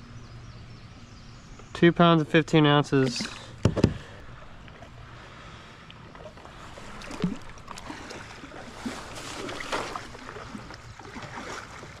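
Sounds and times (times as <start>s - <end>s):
creek water splashing: 2.9s - 12.0s
small knocks: 3.6s - 4.1s.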